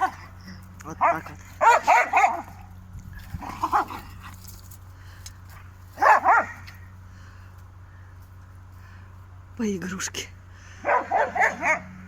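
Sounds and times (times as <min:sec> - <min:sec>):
dogs barking and yapping: 0:00.0 - 0:07.0, 0:10.7 - 0:12.0.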